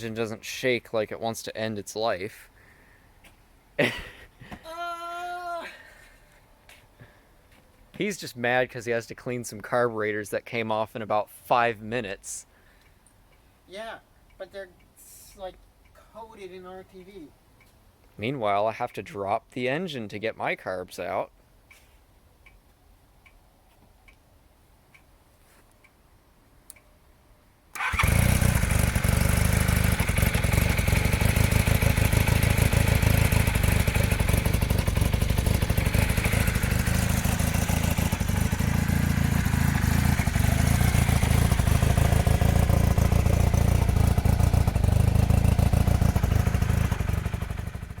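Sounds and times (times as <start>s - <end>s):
faint ticks: 12.7s - 13.5s
motorcycle engine running: 27.8s - 48.0s.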